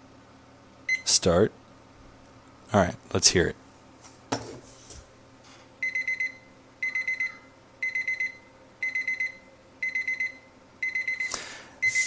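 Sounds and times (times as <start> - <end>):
kitchen timer alarm beeps: 0.9 - 1.1, 5.8 - 12.0.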